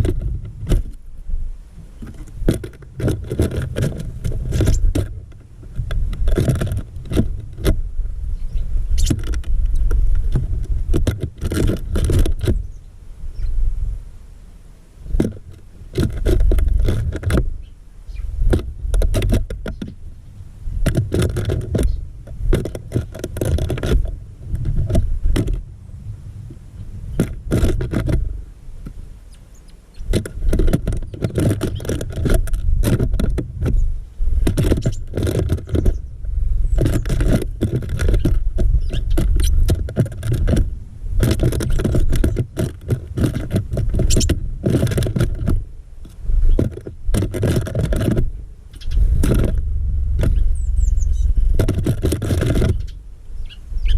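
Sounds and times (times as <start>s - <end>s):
wind rumble on microphone: 0.0s - 14.2s, 14.9s - 53.9s.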